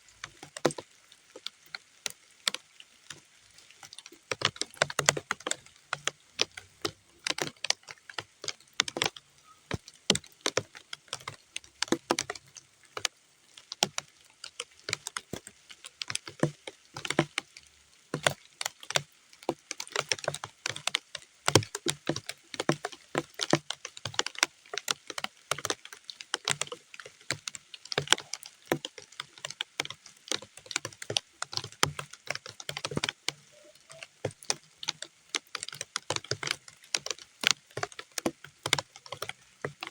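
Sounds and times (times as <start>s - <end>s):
raindrops on muddy ground: 0.0s - 39.9s.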